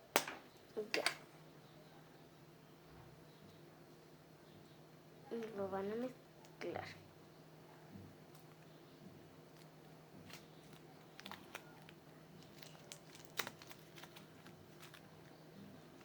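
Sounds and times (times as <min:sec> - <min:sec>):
slime squelching and clicking: 0:10.3 - 0:15.0.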